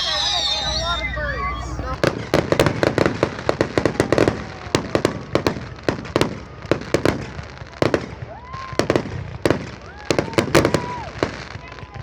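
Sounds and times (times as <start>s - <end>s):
rising firework whistle: 0.0s - 2.7s
fireworks bangs and pops: 0.0s - 12.0s.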